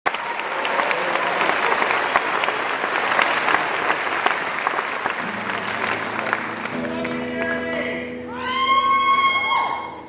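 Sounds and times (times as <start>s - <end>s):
audience applauding: 0.0s - 8.1s.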